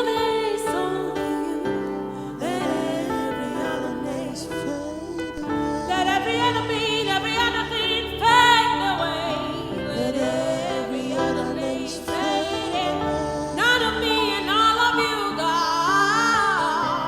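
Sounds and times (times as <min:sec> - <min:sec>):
person singing with vibrato: 0:00.0 - 0:17.0.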